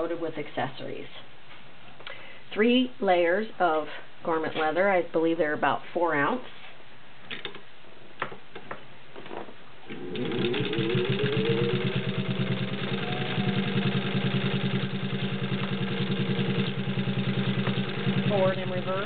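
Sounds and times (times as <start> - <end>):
sewing machine motor whine: 9.9 - 19.0.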